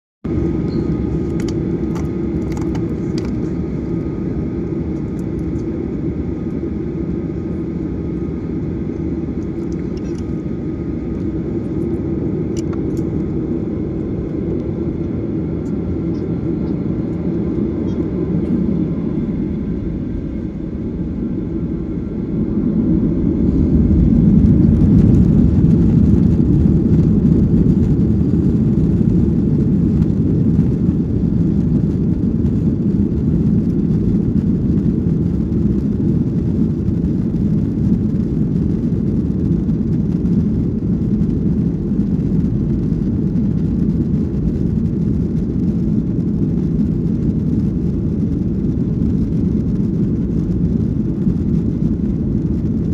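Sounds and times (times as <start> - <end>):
jet engines deep rumble: 0.2 - 52.9
faint jet engine whine: 0.3 - 52.9.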